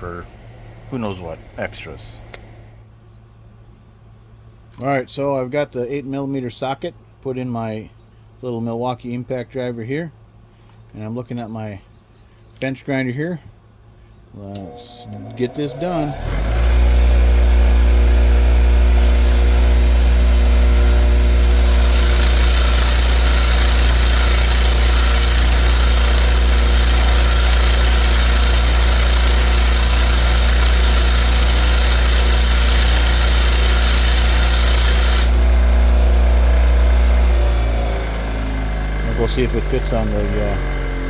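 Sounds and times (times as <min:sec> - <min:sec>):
metal grinding noise: 0:14.5 - 0:35.7
bench grinder motor hum: 0:14.6 - 0:41.0.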